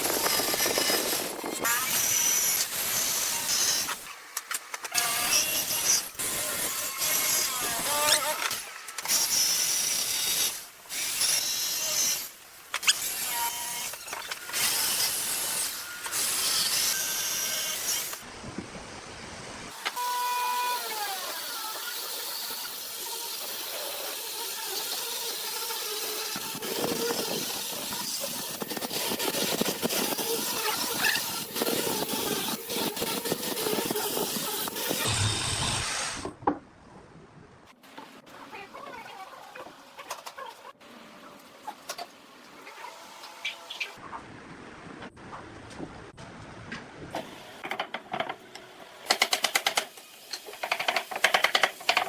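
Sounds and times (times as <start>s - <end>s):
woodworking machinery: 47.2s - 52.0s.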